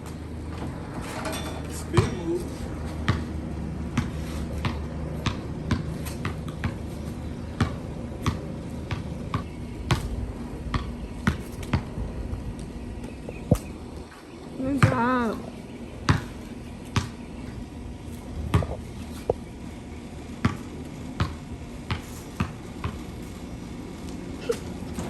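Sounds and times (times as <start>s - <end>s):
steady low hum: 0.0s - 25.0s
basketball bouncing on hard surface: 2.0s - 2.2s, 3.0s - 3.3s, 3.9s - 13.7s, 14.7s - 15.3s, 16.0s - 17.2s, 18.4s - 19.4s, 20.4s - 23.1s.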